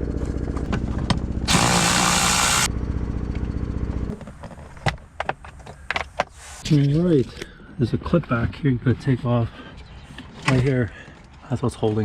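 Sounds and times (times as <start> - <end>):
power tool rattling: 1.5 - 2.7.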